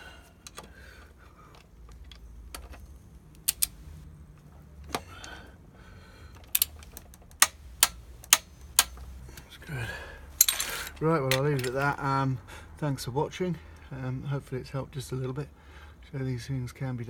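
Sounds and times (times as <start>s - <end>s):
torque wrench clicking: 3.4s - 3.8s, 6.4s - 9.0s.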